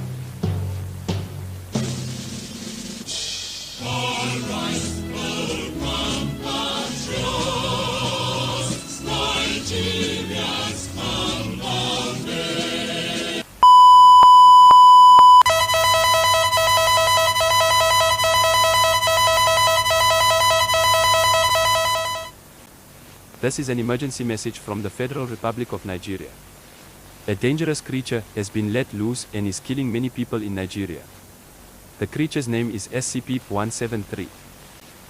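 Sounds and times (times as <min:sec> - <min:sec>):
background music: 0:00.5 - 0:13.4
steady single-pitch beep: 0:13.6 - 0:22.3
emergency alert tone: 0:13.6 - 0:22.4.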